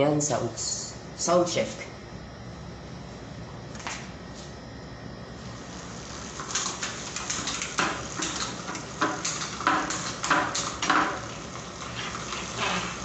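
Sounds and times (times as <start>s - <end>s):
bike hub ratcheting clicks: 6.4s - 13.0s.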